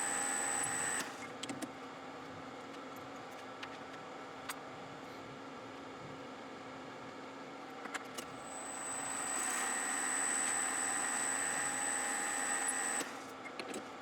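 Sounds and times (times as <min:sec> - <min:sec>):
lathe cutting whine and hiss: 0:00.0 - 0:01.2, 0:08.5 - 0:13.2.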